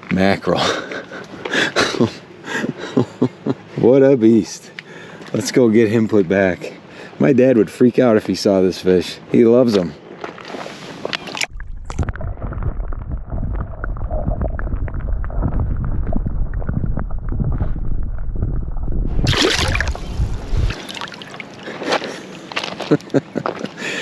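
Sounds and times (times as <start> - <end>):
water sloshing and gurgling: 10.0 - 23.0.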